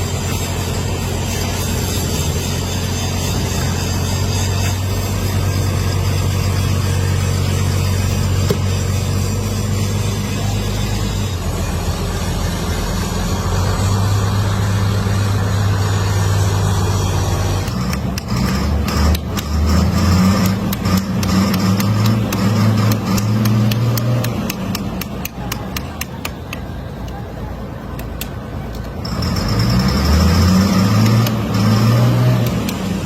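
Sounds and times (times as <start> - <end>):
engine humming: 0.0 - 33.0.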